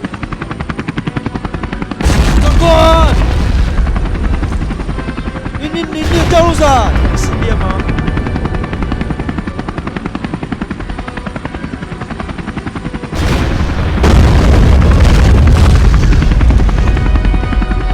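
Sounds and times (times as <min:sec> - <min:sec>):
helicopter rotor chopping: 0:00.0 - 0:17.9
rush of noise with deep rumble: 0:13.2 - 0:17.9.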